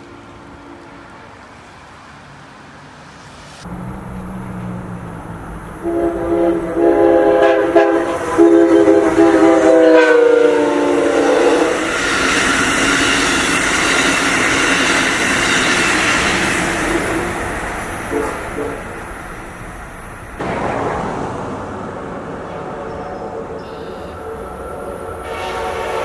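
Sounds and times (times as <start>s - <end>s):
train wheel and rail noise: 0.0s - 26.0s
locomotive air horn blasts: 3.7s - 12.0s, 18.0s - 19.0s, 22.6s - 26.0s.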